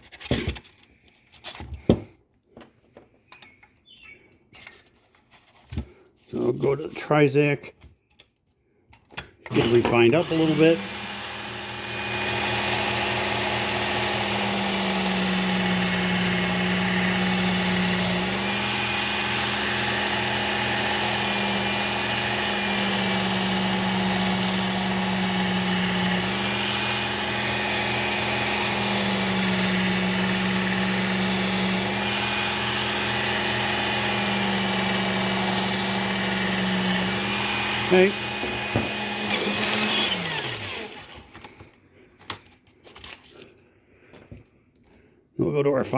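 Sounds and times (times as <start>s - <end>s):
belt sharpener grinding: 9.4s - 41.7s.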